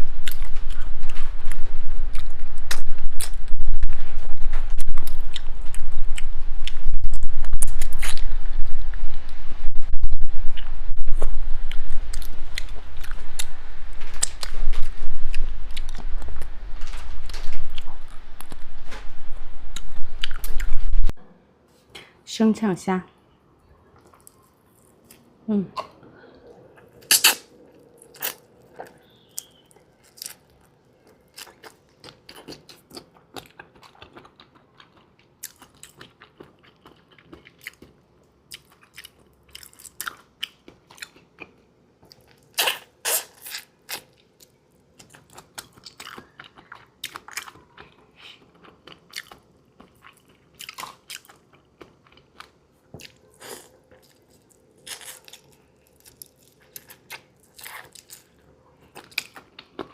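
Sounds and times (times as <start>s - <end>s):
chewing shrimp: 23.7s - 59.9s.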